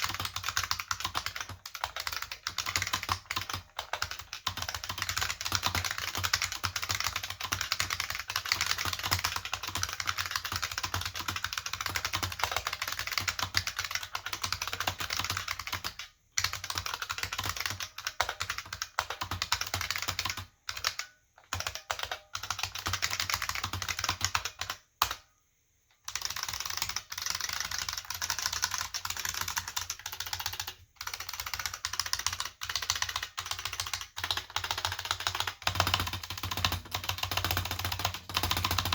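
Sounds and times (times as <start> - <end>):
fast keyboard typing: 0.0 - 25.2, 26.0 - 38.9.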